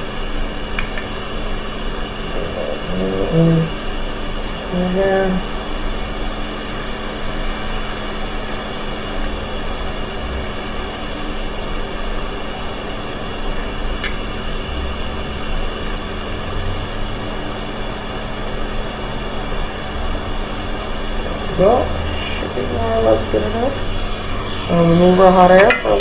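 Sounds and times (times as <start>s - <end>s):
hot air blower hissing: 0.0s - 18.8s, 19.4s - 26.0s
faint steady whine: 0.0s - 26.0s
small click: 0.8s - 1.1s.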